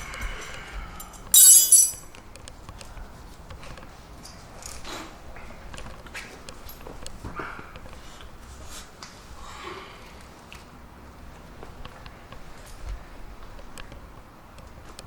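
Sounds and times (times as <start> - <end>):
metal wrenches clanking: 1.4 - 2.0.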